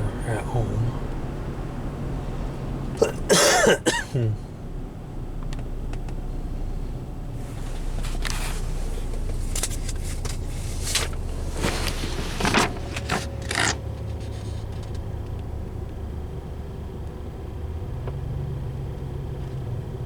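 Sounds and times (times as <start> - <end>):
car engine humming: 0.0 - 20.0
scraping and rustling: 7.4 - 15.1.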